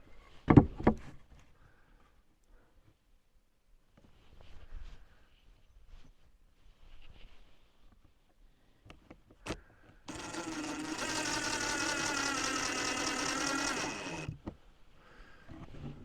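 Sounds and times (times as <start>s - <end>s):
cordless drill running: 10.1s - 14.4s.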